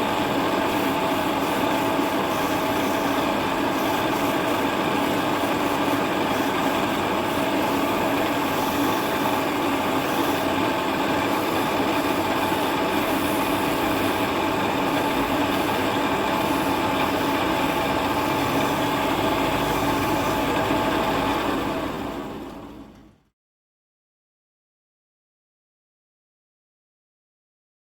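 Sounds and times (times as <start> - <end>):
turning tools cutting wood: 0.0 - 21.9
lathe motor humming: 0.0 - 23.0.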